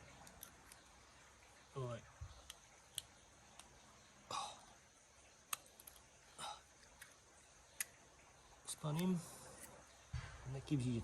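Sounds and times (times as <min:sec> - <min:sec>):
faint clicks of metal parts: 0:00.0 - 0:01.0, 0:05.4 - 0:06.1, 0:06.7 - 0:08.0, 0:08.7 - 0:09.9.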